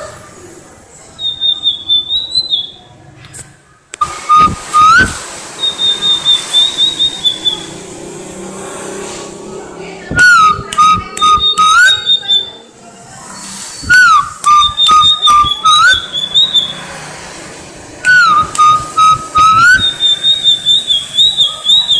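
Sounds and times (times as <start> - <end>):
songbird whistled phrases: 1.1 - 2.8, 4.0 - 7.8, 10.1 - 12.7, 13.7 - 16.9, 18.0 - 21.9
sharp bird notes: 1.1 - 2.9, 4.0 - 12.7, 13.8 - 17.0, 17.9 - 21.9.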